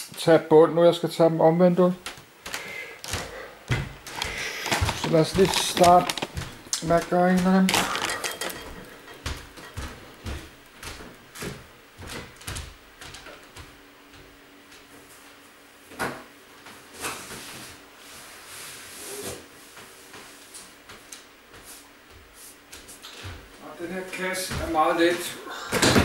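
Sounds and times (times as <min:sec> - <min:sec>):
storage boxes knocking and scraping: 0:04.3 - 0:06.4.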